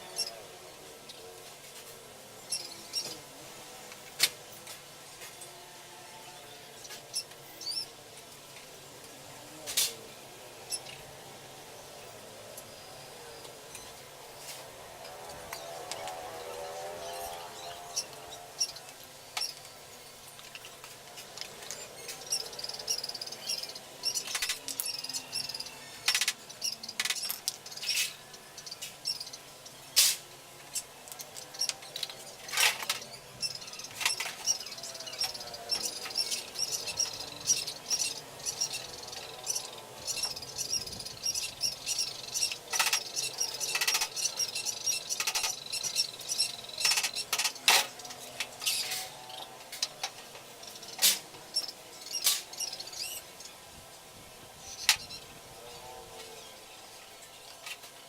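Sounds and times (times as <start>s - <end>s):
tools and parts clicking: 20.4s - 28.2s, 30.0s - 33.1s, 41.8s - 50.2s
high wavering chirping: 21.7s - 29.8s, 31.4s - 47.4s.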